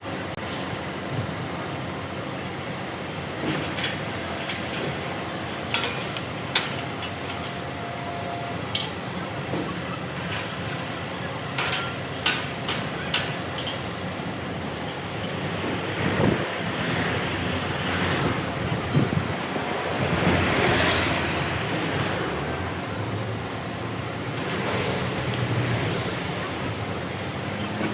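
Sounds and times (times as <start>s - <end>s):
machinery rumble: 0.0s - 27.9s
sharp knocks and clanks: 11.6s - 13.8s.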